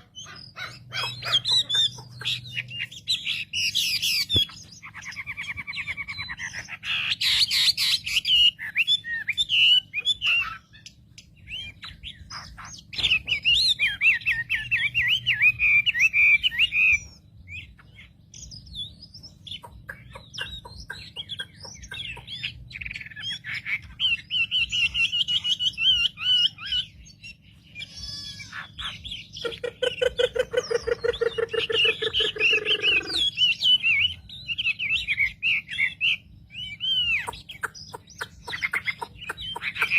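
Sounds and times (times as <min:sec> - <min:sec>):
songbird singing: 0:00.0 - 0:39.9
buzzy drawn-out bird call: 0:27.7 - 0:28.8.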